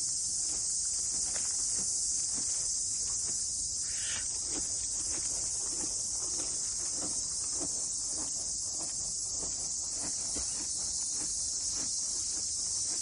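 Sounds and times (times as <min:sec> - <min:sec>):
insects shrilling: 0:03.6 - 0:09.2.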